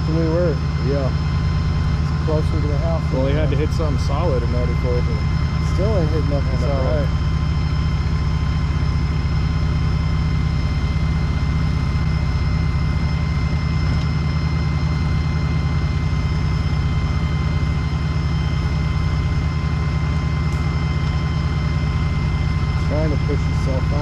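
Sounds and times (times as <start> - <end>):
excavator diesel engine rumbling: 0.0 - 24.0
high whine: 0.0 - 24.0.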